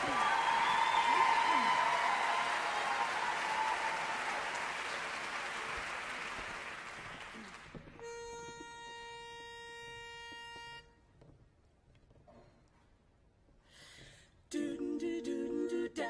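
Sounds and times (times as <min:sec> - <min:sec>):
audience applause: 0:00.0 - 0:08.0.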